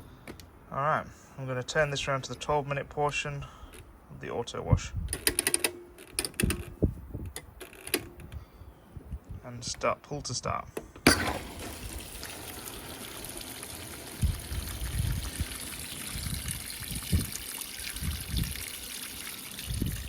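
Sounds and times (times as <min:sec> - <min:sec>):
water pouring into washing machine: 0:11.1 - 0:20.0
dull low thumps: 0:14.2 - 0:18.6.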